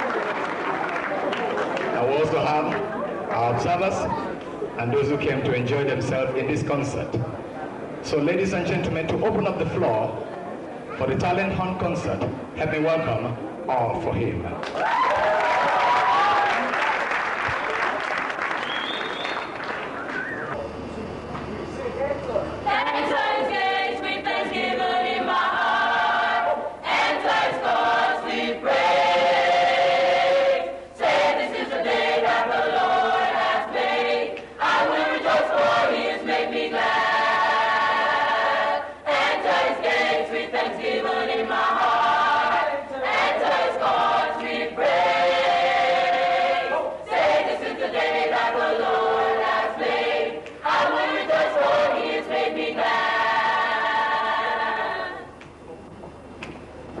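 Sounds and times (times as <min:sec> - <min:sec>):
choir singing: 0:22.6 - 0:55.4.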